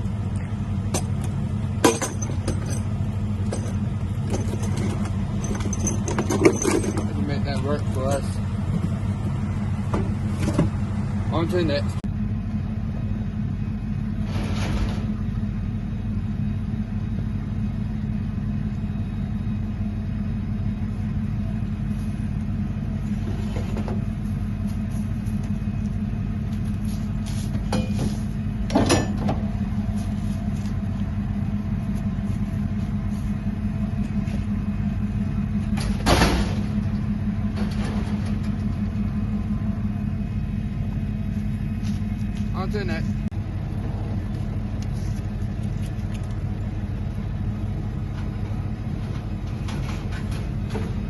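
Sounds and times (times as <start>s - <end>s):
truck engine and road noise: 0.0s - 51.0s
knocks and rattles: 0.9s - 9.0s.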